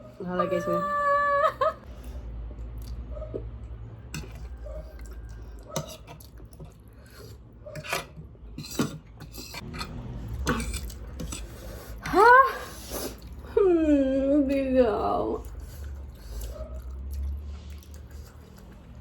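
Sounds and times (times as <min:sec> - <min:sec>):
cutlery clinking and scraping a dish: 0:07.8 - 0:11.5.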